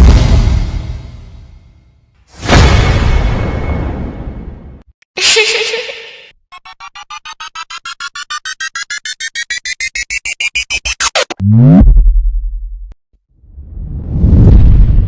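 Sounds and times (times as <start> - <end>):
short electronic beeps rising: 6.5 - 11.8
deep downward sweeping tone: 7.0 - 13.0.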